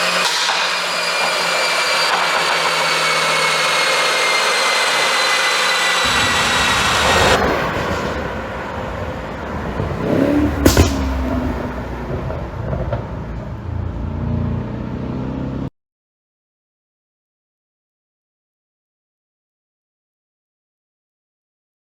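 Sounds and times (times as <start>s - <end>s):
high whine: 0.0s - 12.8s
car engine revving: 0.0s - 15.7s
exhaust pop: 6.0s - 13.6s.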